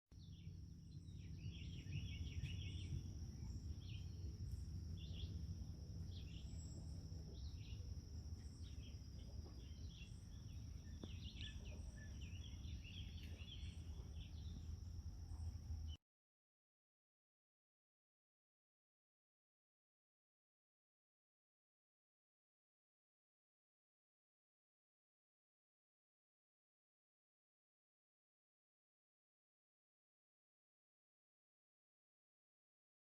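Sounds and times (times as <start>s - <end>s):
low steady rumble: 0.1s - 16.0s
small birds chirping: 0.2s - 16.0s.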